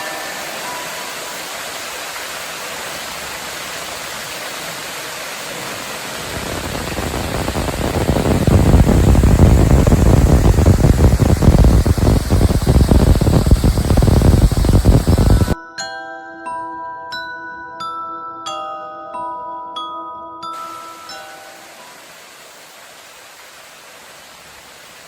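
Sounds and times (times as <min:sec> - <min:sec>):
waterfall rushing: 0:00.0 - 0:15.6, 0:20.6 - 0:25.0.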